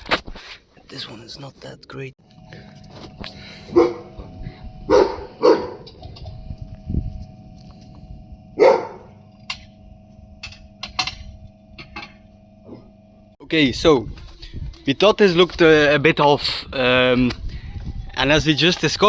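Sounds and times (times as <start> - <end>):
steady hum: 2.0 - 18.1
dog barking: 3.7 - 4.2, 4.9 - 6.0, 8.6 - 9.2.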